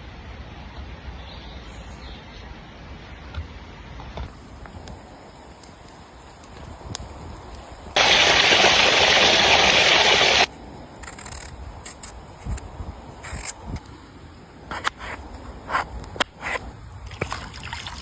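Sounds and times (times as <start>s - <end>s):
loud steady hiss: 4.4s - 11.8s.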